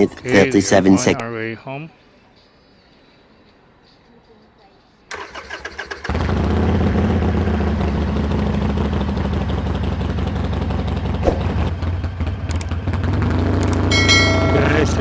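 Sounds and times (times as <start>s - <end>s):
motorcycle engine idling: 6.0s - 15.0s.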